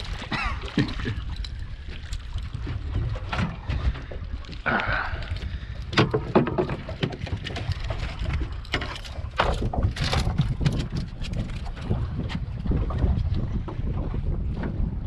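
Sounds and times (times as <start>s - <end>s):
wind rumbling on microphone: 0.0s - 15.0s
knocks and clatters: 5.9s - 11.9s.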